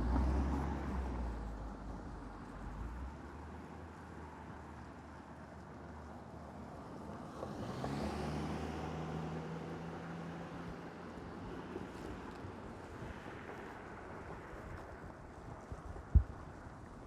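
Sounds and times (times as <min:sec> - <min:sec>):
car passing by: 0:00.0 - 0:01.8, 0:06.6 - 0:15.8.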